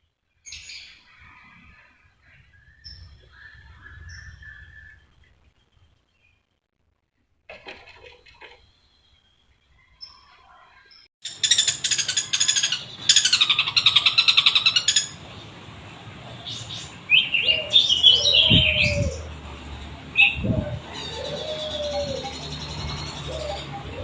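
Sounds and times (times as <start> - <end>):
bird singing varied song: 2.3 - 6.5.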